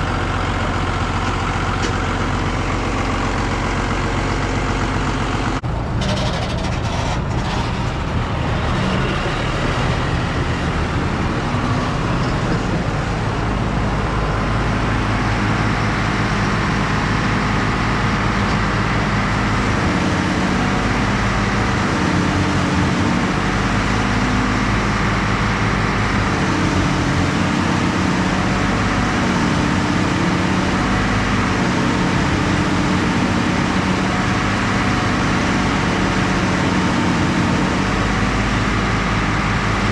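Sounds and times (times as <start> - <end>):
heavy engine running: 0.0 - 39.9.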